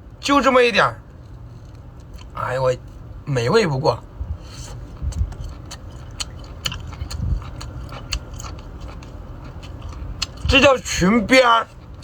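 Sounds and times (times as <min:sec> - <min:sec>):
person chewing: 0:04.5 - 0:10.5.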